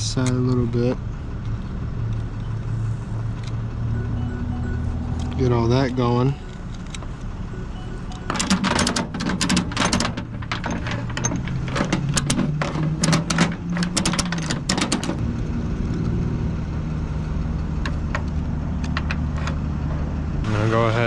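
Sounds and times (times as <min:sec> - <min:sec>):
metallic clicks and rattles: 0:08.1 - 0:15.2, 0:17.8 - 0:20.0
truck engine idling: 0:16.5 - 0:21.0.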